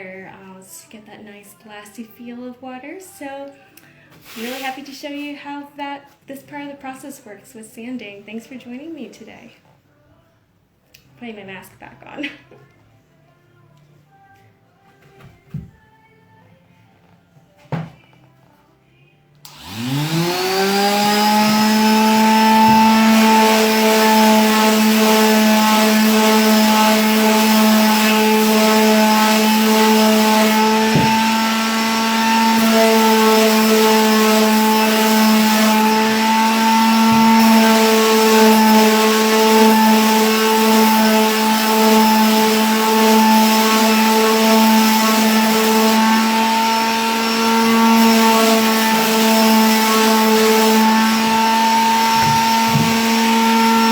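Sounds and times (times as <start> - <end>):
electric sander running: 19.5 - 53.9.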